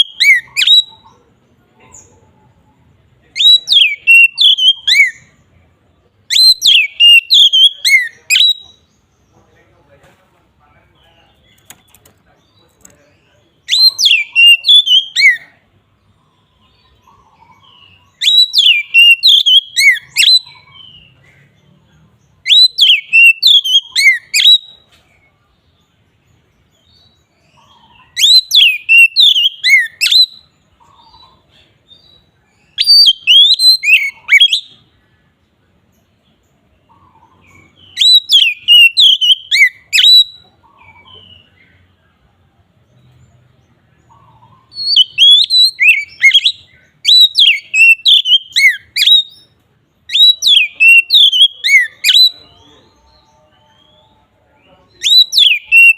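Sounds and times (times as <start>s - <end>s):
bird singing whistled song: 0.0s - 1.2s, 3.4s - 5.5s, 6.2s - 9.1s, 13.6s - 15.6s, 16.4s - 21.2s, 22.2s - 24.9s, 26.8s - 35.0s, 36.9s - 41.9s, 44.1s - 55.9s.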